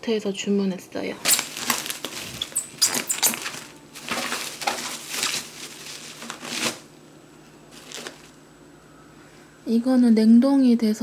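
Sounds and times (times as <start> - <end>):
plastic and paper crinkling: 1.2 - 8.4.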